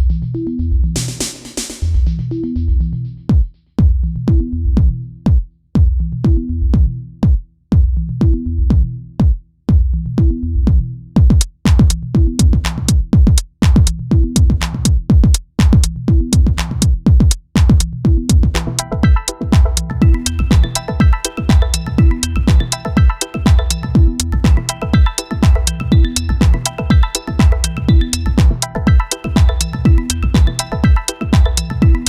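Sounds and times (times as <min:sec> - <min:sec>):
electronic dance music: 0:11.2 - 0:32.0.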